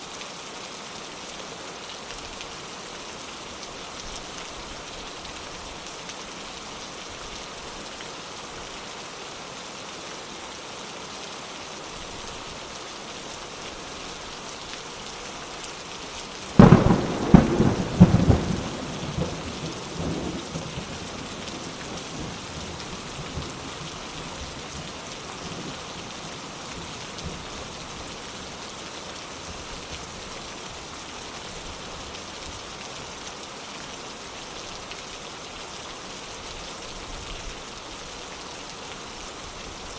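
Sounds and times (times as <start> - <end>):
heavy rain: 0.0 - 39.9
thunderclap with rolling rumbles: 16.6 - 21.0.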